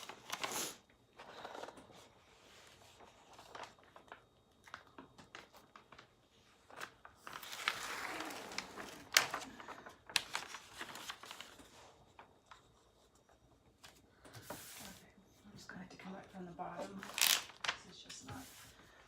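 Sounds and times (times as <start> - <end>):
plastic film crinkling: 0.0 - 1.8, 2.7 - 12.6, 16.2 - 18.9.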